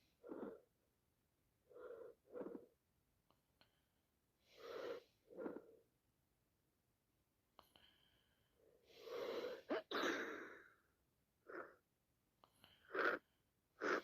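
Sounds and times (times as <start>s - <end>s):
short sniffs: 4.4s - 5.7s, 8.8s - 10.6s
breath drawn in: 8.9s - 10.8s.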